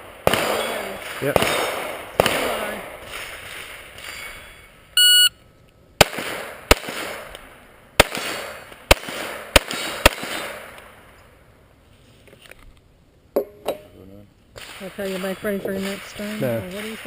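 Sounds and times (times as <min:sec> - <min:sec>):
pistol shots: 0:00.0 - 0:04.2, 0:06.0 - 0:07.4, 0:08.0 - 0:11.0, 0:14.6 - 0:17.0
shot timer beep: 0:05.0 - 0:05.4.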